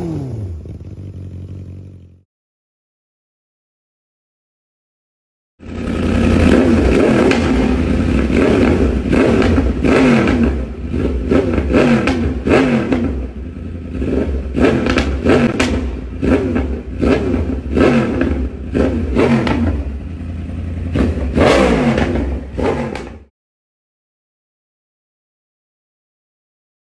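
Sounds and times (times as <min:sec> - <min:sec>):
sport bike engine revving: 0:00.0 - 0:02.2, 0:05.6 - 0:23.3.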